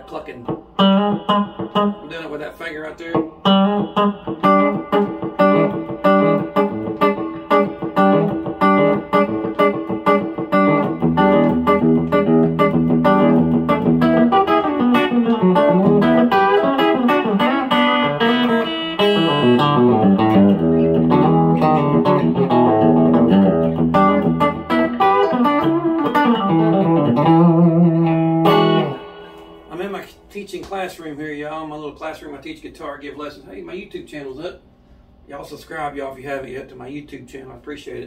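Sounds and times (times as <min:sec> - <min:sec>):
clean electric guitar country licks: 0:00.0 - 0:31.0.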